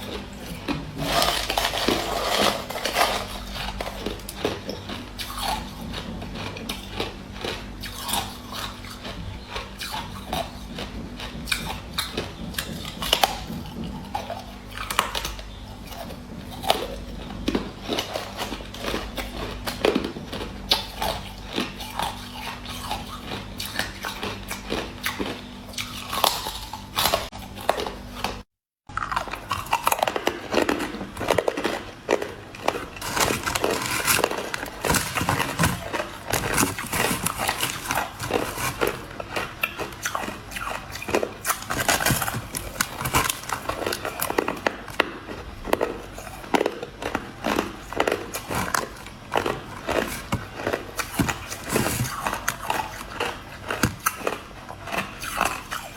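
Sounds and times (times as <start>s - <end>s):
crushed ice crunching: 0.5s - 5.5s, 30.1s - 45.9s, 47.0s - 54.4s.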